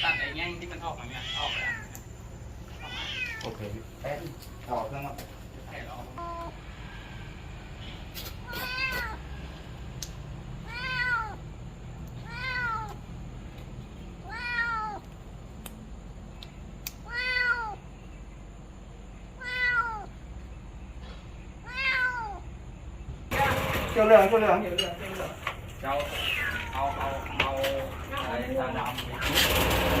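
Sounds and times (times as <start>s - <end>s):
cat meowing in pain: 1.0s - 2.0s, 2.7s - 3.6s, 8.4s - 9.4s, 10.6s - 11.5s, 12.2s - 13.0s, 14.2s - 15.0s, 17.0s - 17.8s, 19.4s - 20.2s, 21.6s - 22.4s
faint clicks: 15.0s - 17.0s.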